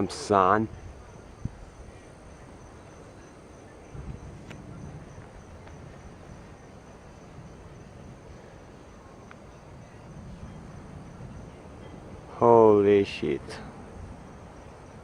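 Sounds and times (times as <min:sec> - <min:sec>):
crickets chirping: 0:00.0 - 0:15.0
soft low rumble: 0:00.7 - 0:12.4.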